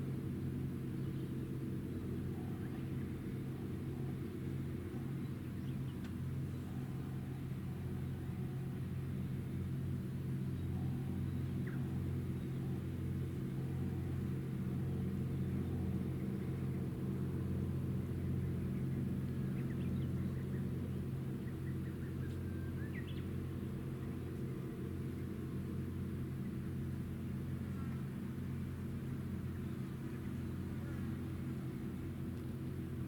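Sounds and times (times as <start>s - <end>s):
low ship engine drone: 0.0s - 33.0s.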